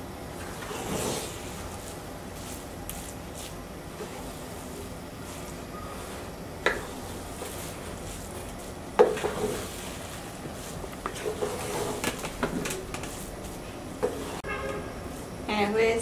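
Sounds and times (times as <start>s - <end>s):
spoon scraping in cooking pot: 4.0s - 12.2s.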